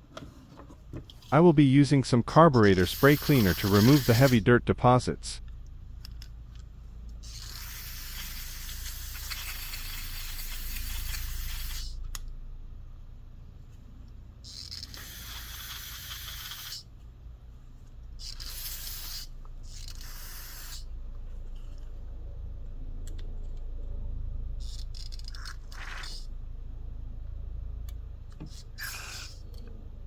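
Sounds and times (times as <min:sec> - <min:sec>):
aerosol spray hissing: 0:02.8 - 0:04.4, 0:07.4 - 0:12.0.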